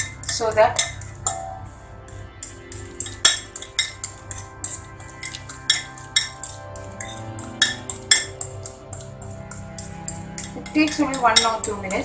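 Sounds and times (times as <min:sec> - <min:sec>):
background music: 0:00.0 - 0:12.0
fork clinking against bowl: 0:02.8 - 0:12.0.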